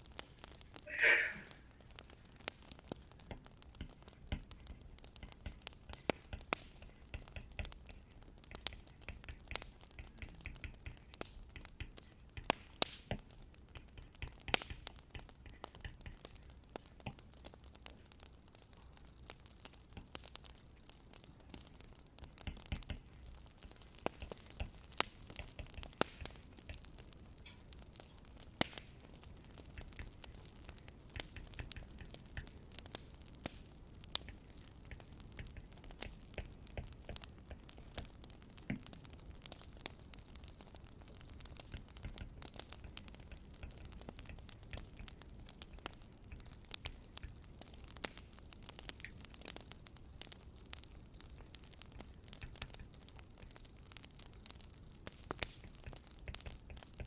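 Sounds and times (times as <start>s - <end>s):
wood fire crackling: 0.0s - 57.0s.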